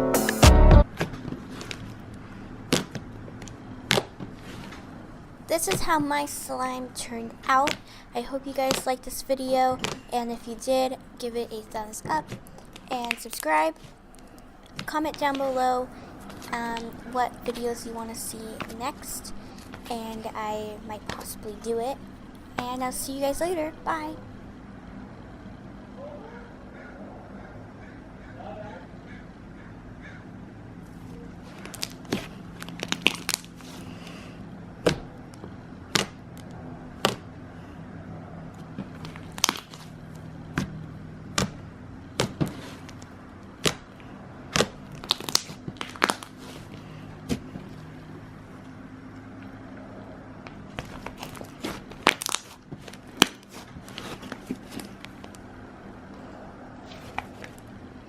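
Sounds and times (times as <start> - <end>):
steady low hum: 0.0 - 58.0.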